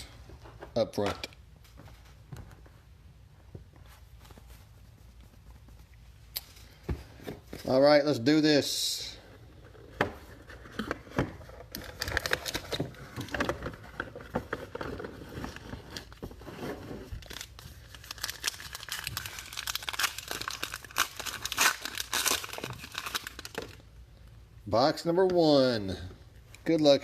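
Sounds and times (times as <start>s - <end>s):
plastic shrink-wrap tearing: 17.2s - 23.8s.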